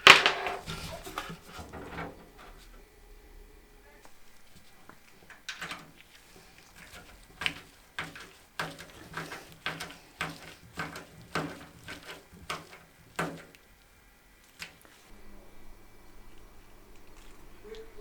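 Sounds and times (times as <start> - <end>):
clicks and knocks of computer parts: 5.3 - 13.6.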